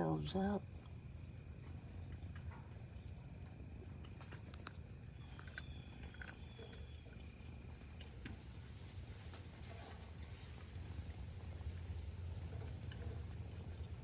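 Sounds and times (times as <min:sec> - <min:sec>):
insects chirring: 0:00.0 - 0:14.0.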